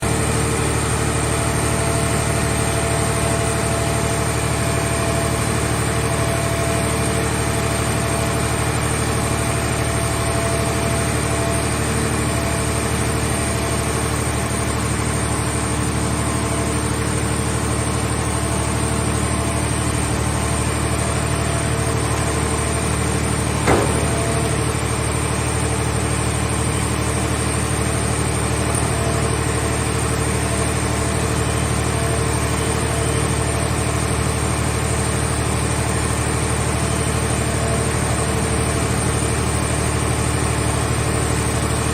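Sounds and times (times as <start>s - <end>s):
machine engine idling: 0.0s - 41.9s
sharp knock: 23.6s - 24.7s.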